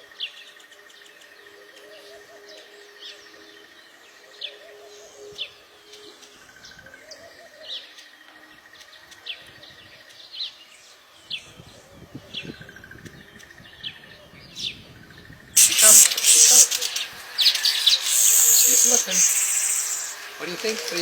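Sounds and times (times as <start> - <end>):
bird chirps: 15.6 - 21.0
faint buzzy trill: 15.6 - 21.0.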